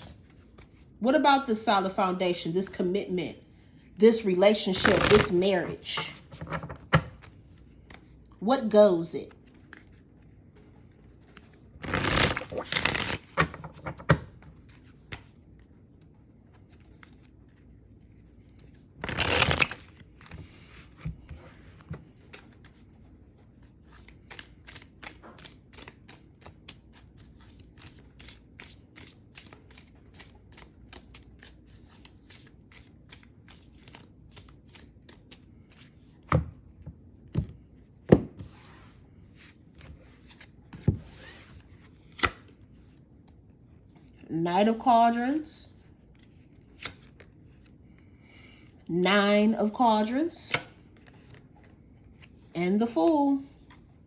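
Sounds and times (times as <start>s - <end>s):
cards being shuffled: 4.7s - 8.2s, 11.0s - 23.0s, 23.7s - 36.3s, 39.3s - 42.6s, 46.1s - 47.8s.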